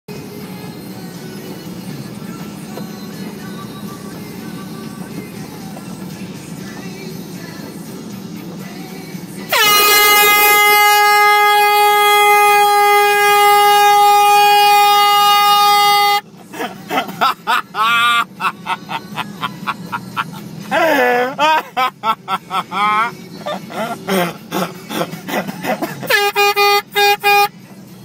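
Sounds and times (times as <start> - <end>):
air horn blasting: 9.5 - 16.4, 22.7 - 27.7.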